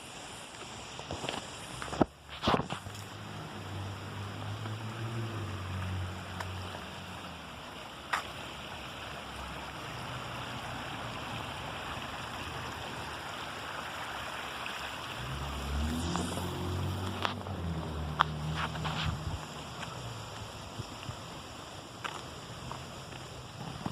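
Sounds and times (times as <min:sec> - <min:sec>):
running water rushing: 0:00.0 - 0:23.9.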